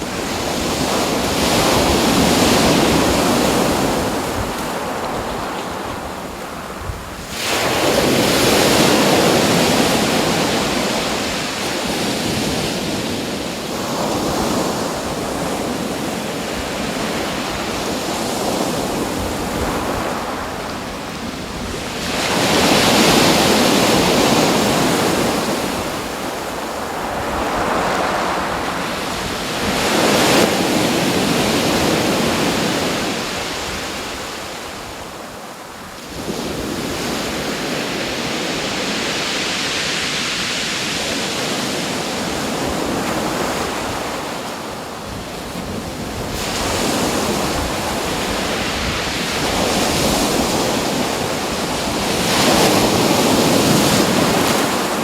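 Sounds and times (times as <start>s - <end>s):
ocean waves washing in and out: 0.0s - 55.0s.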